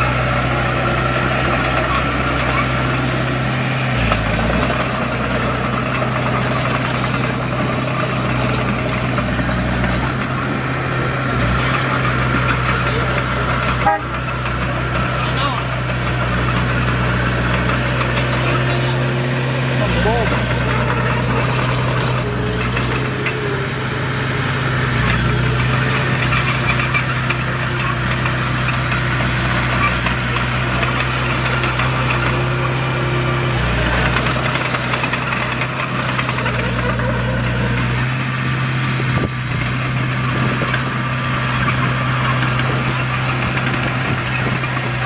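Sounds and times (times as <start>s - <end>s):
diesel engine idling: 0.0s - 45.0s.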